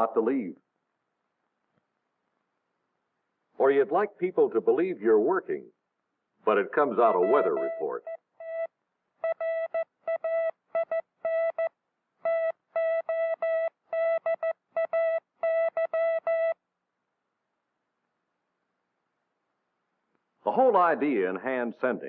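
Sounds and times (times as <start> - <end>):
morse code beeps: 6.9 - 16.6.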